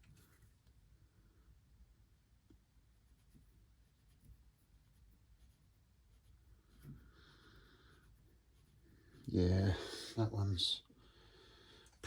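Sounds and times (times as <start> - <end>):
soft scratchy rubbing: 3.0 - 7.1, 7.9 - 9.3.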